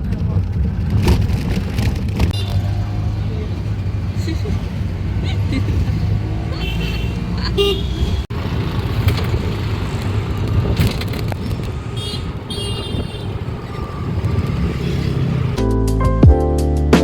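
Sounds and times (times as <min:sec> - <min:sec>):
road vehicle rumble: 0:00.0 - 0:15.6
music: 0:15.6 - 0:17.0.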